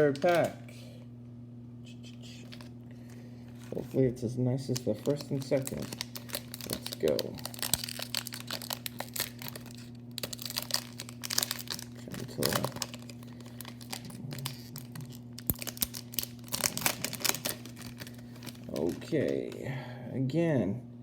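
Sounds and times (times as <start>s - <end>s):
wrapper crinkling and tearing: 0.0s - 0.5s, 4.6s - 19.6s.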